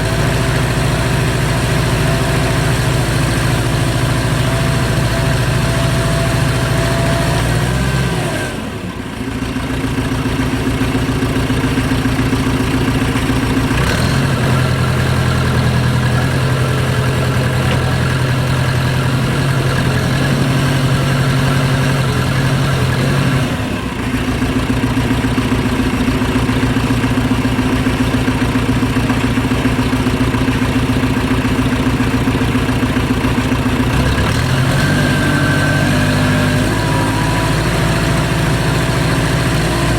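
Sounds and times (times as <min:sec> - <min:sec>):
backhoe loader engine running: 0:00.0 - 0:39.9.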